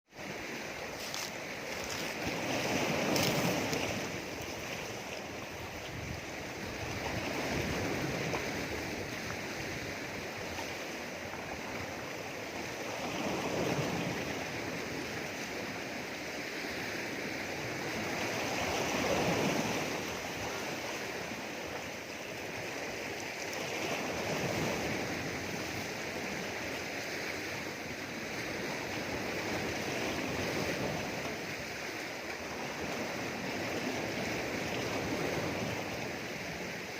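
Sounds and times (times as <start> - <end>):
waves washing over rocks: 0.1 - 36.9.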